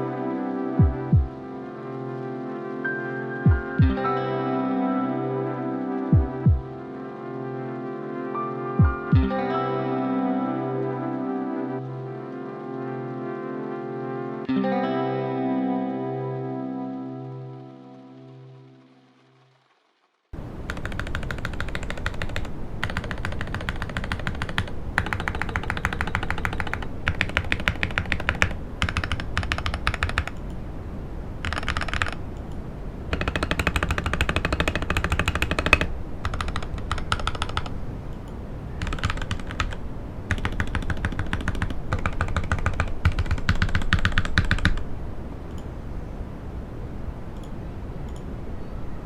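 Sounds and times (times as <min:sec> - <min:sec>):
mechanical keyboard typing: 0:20.6 - 0:30.5, 0:31.4 - 0:32.2, 0:33.1 - 0:37.8, 0:38.8 - 0:44.8.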